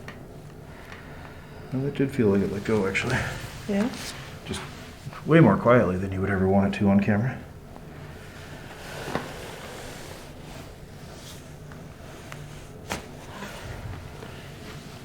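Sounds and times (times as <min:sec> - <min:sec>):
rustling on treatment table: 0:02.2 - 0:05.3, 0:07.8 - 0:15.0.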